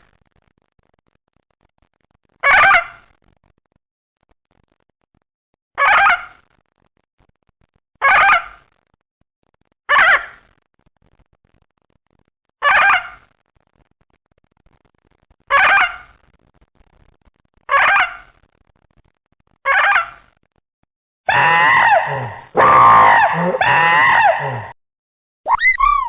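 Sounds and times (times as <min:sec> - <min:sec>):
giant bird calls: 0:21.3 - 0:24.8.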